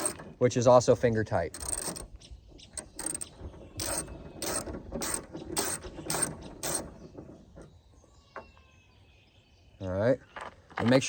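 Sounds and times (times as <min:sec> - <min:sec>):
socket ratchet clicking: 0:01.5 - 0:02.1, 0:02.8 - 0:06.8.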